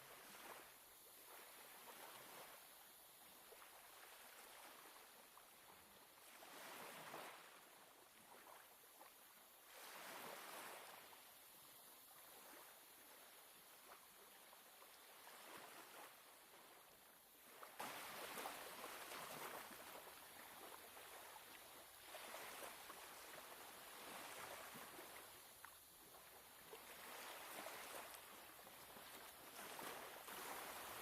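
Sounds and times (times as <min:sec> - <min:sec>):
sea waves washing ashore: 0:17.4 - 0:31.0.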